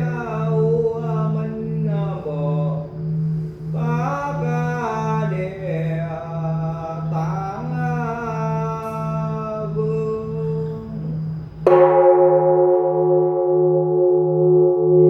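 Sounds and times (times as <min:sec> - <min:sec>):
person chanting: 0:00.0 - 0:11.7
low pulsing hum: 0:00.0 - 0:15.0
temple bell ringing: 0:00.0 - 0:15.0.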